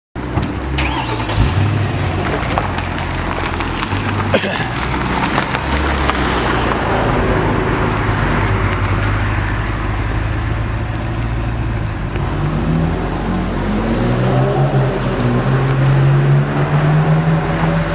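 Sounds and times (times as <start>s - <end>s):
car engine idling deeply: 0.2s - 17.9s.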